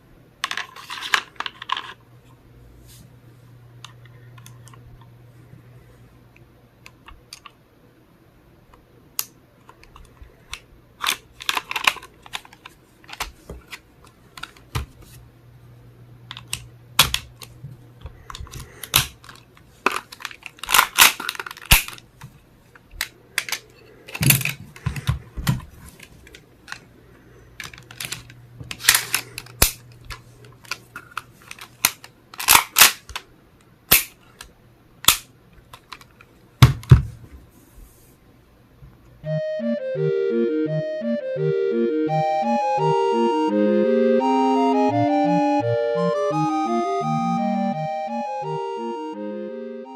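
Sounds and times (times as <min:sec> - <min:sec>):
gun parts clicking and rattling: 0:00.4 - 0:02.0, 0:11.0 - 0:14.7, 0:18.2 - 0:22.0, 0:22.8 - 0:26.8, 0:27.6 - 0:33.2, 0:33.9 - 0:36.3.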